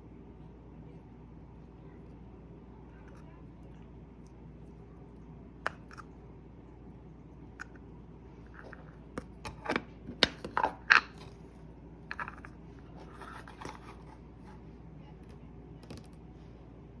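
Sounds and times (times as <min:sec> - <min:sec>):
crinkly scrapes and clicks: 0:12.1 - 0:14.6.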